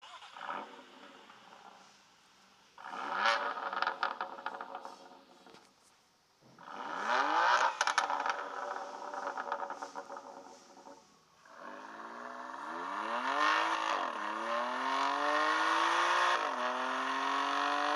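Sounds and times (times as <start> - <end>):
exhaust crackles and pops: 0.0 - 2.0, 2.7 - 5.8, 6.4 - 14.5
car engine revving: 2.8 - 5.0, 6.6 - 17.9.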